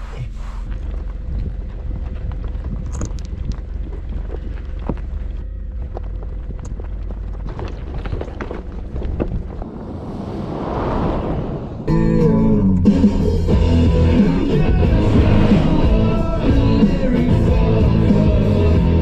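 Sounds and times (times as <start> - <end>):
vehicle engine rumbling: 0.0 - 19.0
light clicks and rattles: 0.7 - 9.6.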